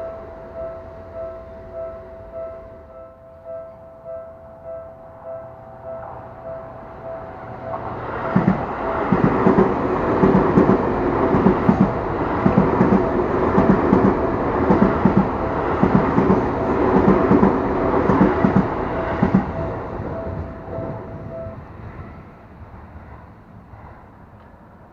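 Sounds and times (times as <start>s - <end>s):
crossing warning bell dinging: 0.0s - 22.6s
train wheels clacking on rails: 7.6s - 22.0s.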